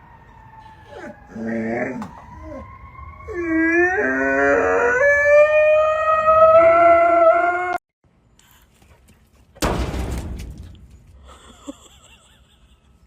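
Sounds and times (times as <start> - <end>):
dog howling: 0.7 - 7.8.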